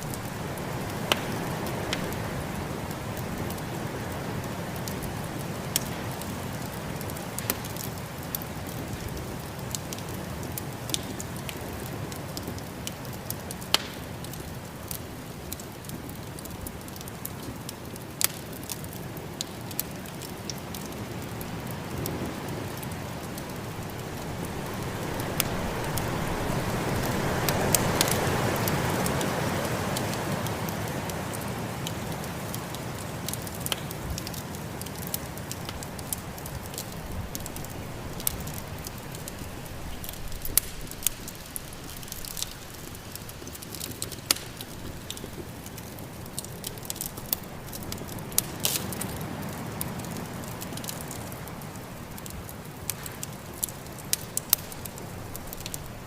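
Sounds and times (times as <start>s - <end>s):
wood fire crackling and popping: 0.0s - 56.0s
snowstorm wind: 21.4s - 33.4s.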